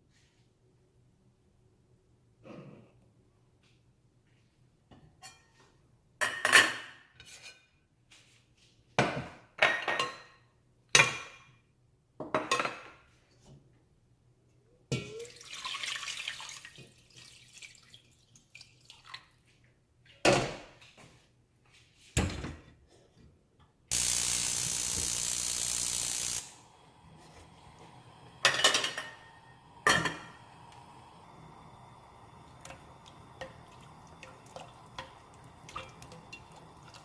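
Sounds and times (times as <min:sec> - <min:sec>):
water running from a tap: 0:15.2 - 0:19.1, 0:23.9 - 0:26.5, 0:30.6 - 0:37.0.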